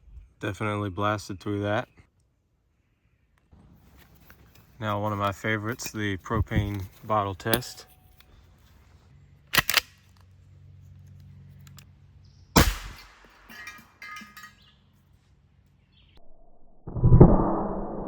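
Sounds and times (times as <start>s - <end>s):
pistol clicks: 9.5s - 10.3s
air pistol shot: 12.6s - 13.5s
ringing metallic clinks: 13.4s - 14.8s.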